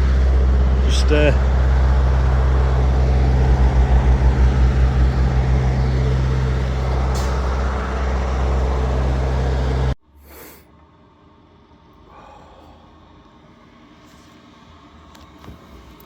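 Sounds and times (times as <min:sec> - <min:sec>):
lorry diesel engine pulling away: 0:00.0 - 0:10.0
air brake hiss: 0:10.2 - 0:10.7.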